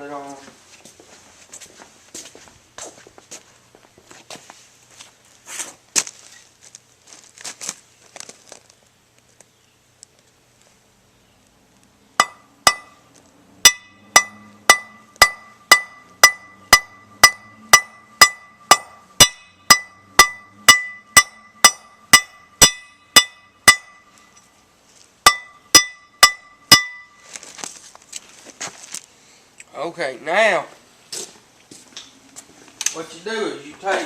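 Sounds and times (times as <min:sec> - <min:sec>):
hammer striking metal ferrule: 0:12.2 - 0:13.0, 0:13.6 - 0:24.4, 0:25.3 - 0:27.2.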